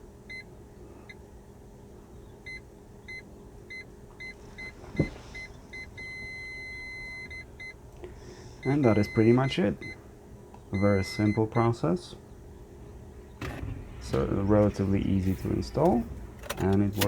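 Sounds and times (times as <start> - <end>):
parking sensor buzzer beeping: 0.3 - 0.5, 2.4 - 7.8, 8.6 - 10.1, 10.7 - 12.0.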